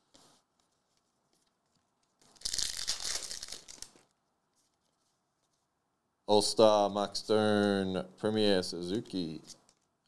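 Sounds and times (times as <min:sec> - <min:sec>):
wrapper tearing open: 0:02.3 - 0:04.1.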